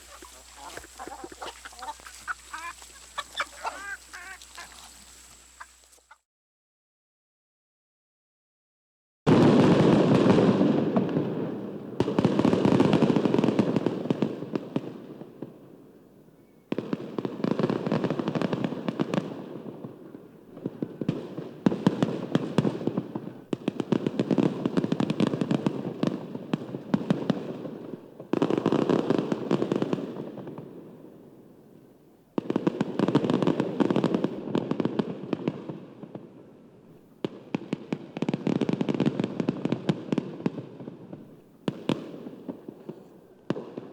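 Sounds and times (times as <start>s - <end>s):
bursts of dense crackling: 0.0s - 6.1s.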